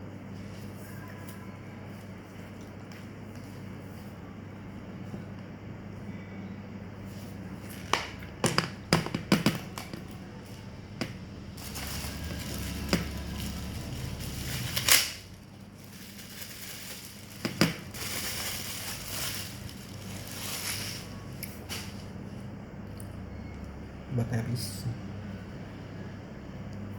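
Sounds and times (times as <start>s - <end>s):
packaging clicks and snaps: 11.0s - 15.3s
packaging rustling and crinkling: 11.0s - 22.0s.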